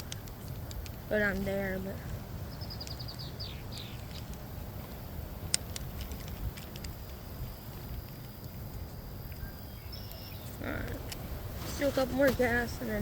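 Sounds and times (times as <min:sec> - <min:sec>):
sharp clicks: 0:00.0 - 0:01.5, 0:02.6 - 0:04.5, 0:05.4 - 0:10.2
wind buffeting microphone: 0:00.0 - 0:13.0
bird chirping: 0:01.1 - 0:04.4, 0:09.2 - 0:11.2.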